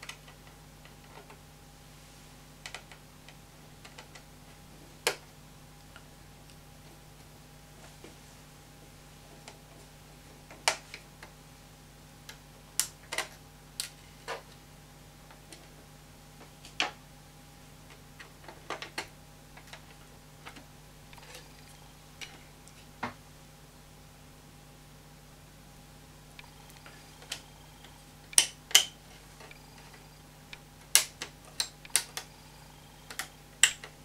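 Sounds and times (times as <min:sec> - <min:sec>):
low hum: 0:19.2 - 0:34.0.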